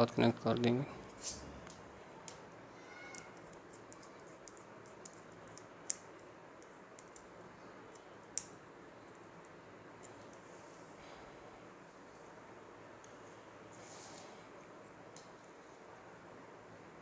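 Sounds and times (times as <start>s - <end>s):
small clicks of handled wires: 3.1s - 7.3s, 7.9s - 8.6s, 9.4s - 10.8s.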